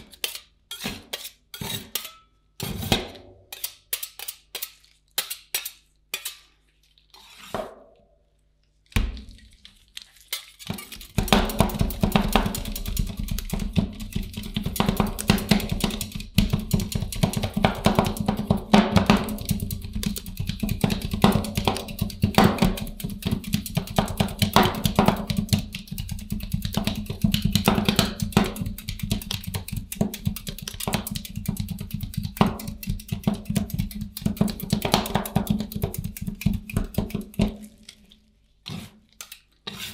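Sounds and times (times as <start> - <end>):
metal spatulas chopping on steel pan: 0.0 - 6.5, 10.3 - 37.8.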